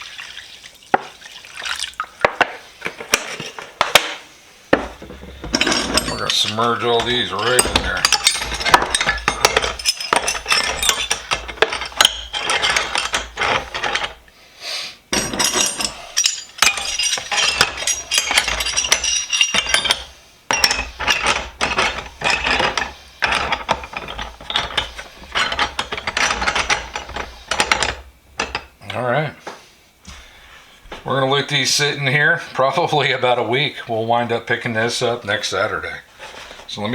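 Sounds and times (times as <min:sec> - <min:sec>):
steel wrenches clinking: 0:04.8 - 0:14.2, 0:15.1 - 0:28.8.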